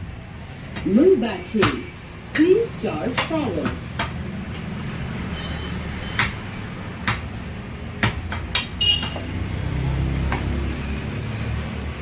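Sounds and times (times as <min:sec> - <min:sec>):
cleaver chopping meat: 0:01.6 - 0:02.6, 0:06.0 - 0:10.7.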